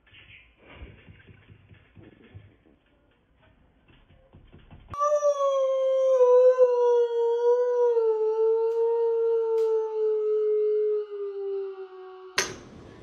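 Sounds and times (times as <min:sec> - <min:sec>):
dog howling: 0:05.0 - 0:12.6.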